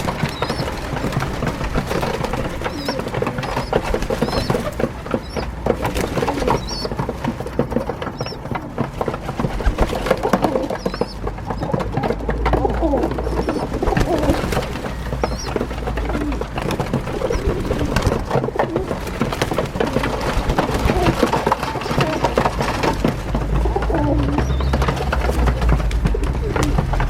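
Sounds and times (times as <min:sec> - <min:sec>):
beaks pecking on windowsill: 0:00.0 - 0:27.0
pigeons cooing: 0:00.0 - 0:27.0
high squeaks: 0:02.7 - 0:08.8.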